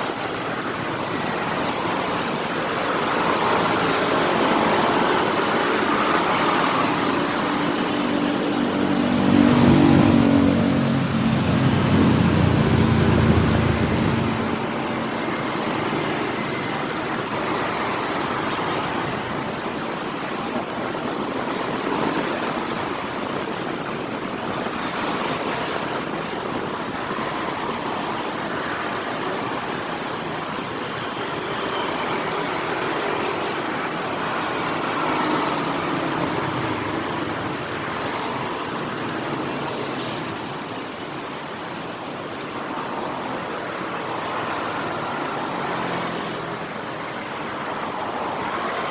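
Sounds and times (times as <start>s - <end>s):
city street traffic: 0.0s - 48.9s.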